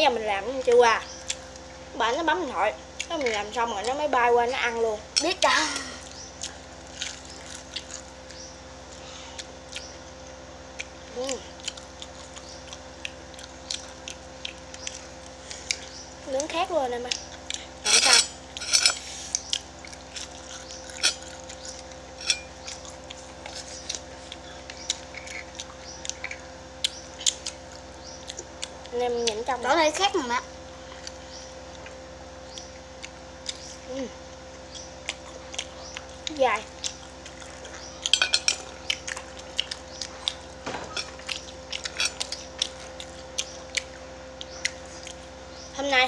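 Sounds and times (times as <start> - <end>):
faint steady hum: 0.0 - 46.0
chewing: 0.7 - 1.8, 2.9 - 4.0, 5.0 - 29.5, 30.6 - 45.6
utensils clicking on a plate: 5.1 - 5.9, 17.8 - 19.5, 20.2 - 22.9, 37.8 - 43.1.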